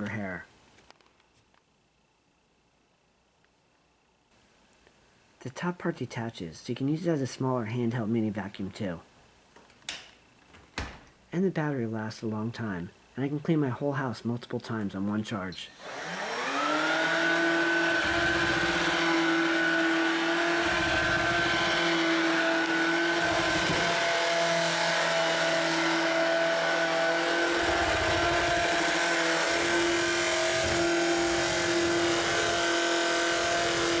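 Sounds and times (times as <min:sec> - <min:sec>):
stick vacuum running: 0:15.8 - 0:34.0.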